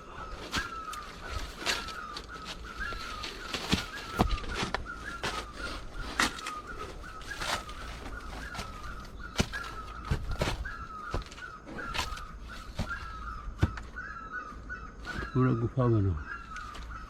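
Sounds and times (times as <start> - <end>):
footsteps on rocky ground: 0.0 - 15.4, 16.3 - 17.0
bird calling repeatedly: 0.0 - 17.0.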